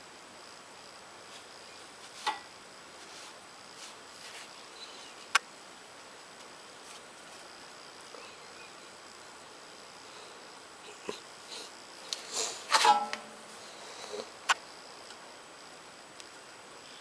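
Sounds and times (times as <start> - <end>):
faint high-pitched whine: 0.0 - 17.0.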